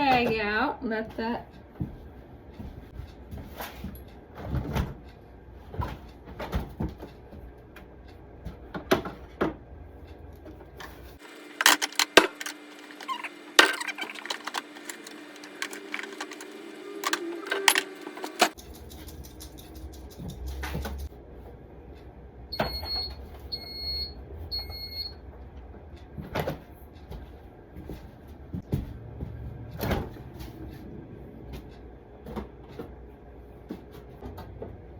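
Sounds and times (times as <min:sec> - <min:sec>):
clunks and knocks of handling: 0:11.2 - 0:18.6.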